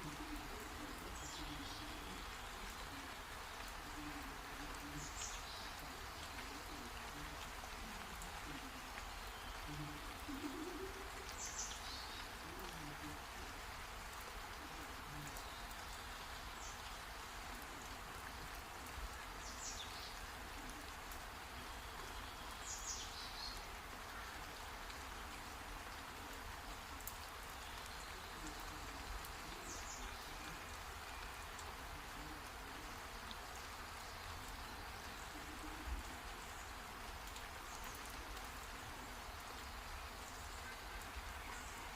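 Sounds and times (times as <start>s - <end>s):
steady rain: 0.0s - 41.9s.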